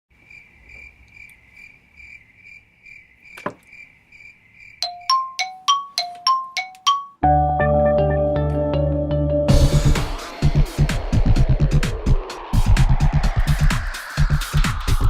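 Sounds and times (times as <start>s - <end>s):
bell-like dings: 4.8s - 7.2s.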